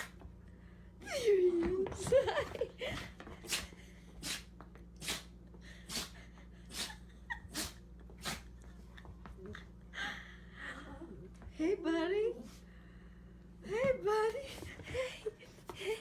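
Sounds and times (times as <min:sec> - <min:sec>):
dog sneezing: 0:03.4 - 0:08.6.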